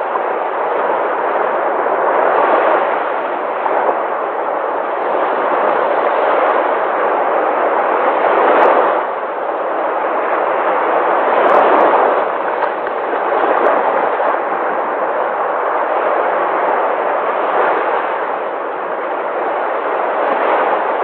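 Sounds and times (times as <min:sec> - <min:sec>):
sea waves breaking: 0:00.0 - 0:21.0.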